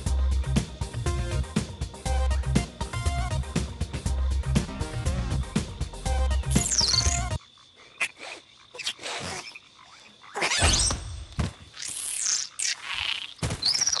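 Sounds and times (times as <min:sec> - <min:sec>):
small animal chirping and squeaking: 0:06.5 - 0:11.0, 0:11.8 - 0:14.0.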